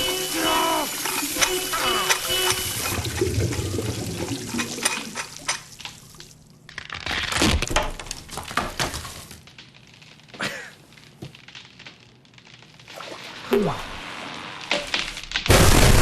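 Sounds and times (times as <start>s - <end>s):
water splashing: 0.8s - 6.3s.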